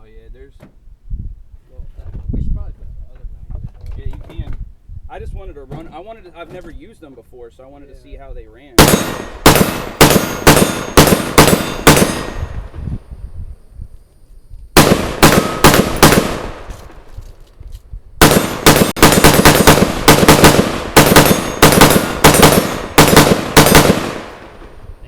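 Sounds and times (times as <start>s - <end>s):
rifle shots with ring-off: 8.8s - 12.8s, 14.8s - 17.4s, 18.2s - 25.0s.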